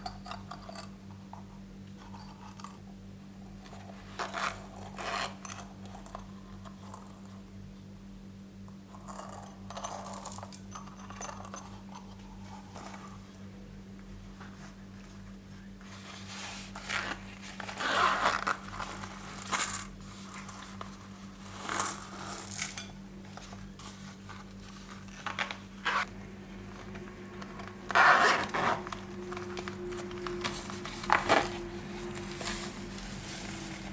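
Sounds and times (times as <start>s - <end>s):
steady low hum: 0.0s - 33.9s.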